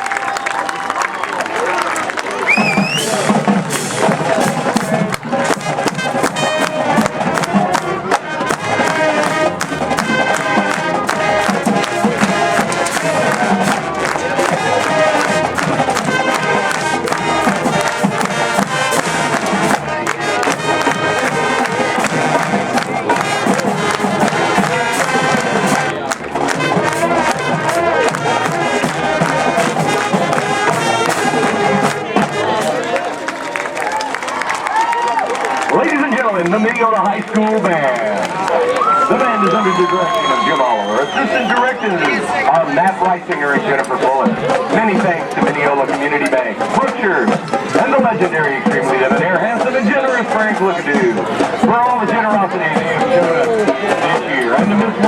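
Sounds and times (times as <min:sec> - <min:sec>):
crowd noise: 0:00.0 - 0:55.0
drumline steady beat: 0:02.4 - 0:35.0, 0:35.6 - 0:55.0
brass horns playing tune: 0:02.6 - 0:33.4.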